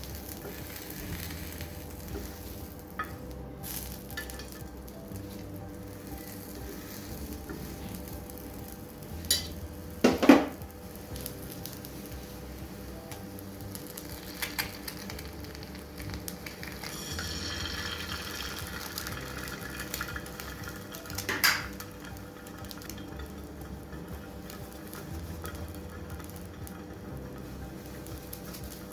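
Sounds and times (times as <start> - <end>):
food sizzling in a pan: 0.0 - 28.9
utensil clanking against cookware: 9.2 - 10.6, 16.1 - 28.9.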